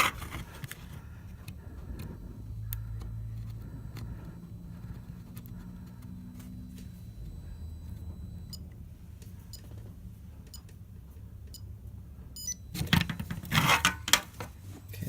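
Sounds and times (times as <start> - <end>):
low electrical hum: 0.0 - 15.0
high electronic beeps: 12.4 - 12.8
clattering handling noise: 12.8 - 14.7.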